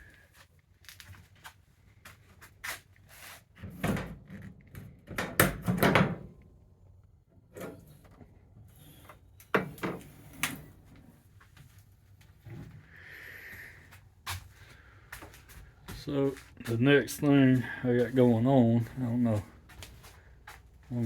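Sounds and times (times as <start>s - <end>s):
metal toolbox lid knocks and clunks: 5.1s - 6.3s.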